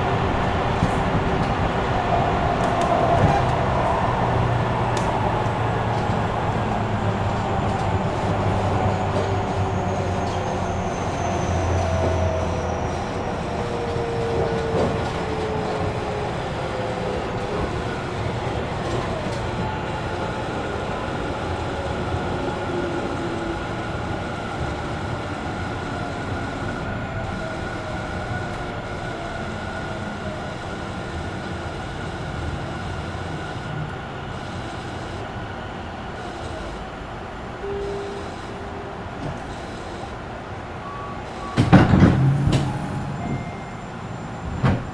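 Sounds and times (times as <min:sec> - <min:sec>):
train wheel and track noise: 0:00.0 - 0:44.9
steady high tone: 0:37.6 - 0:40.2.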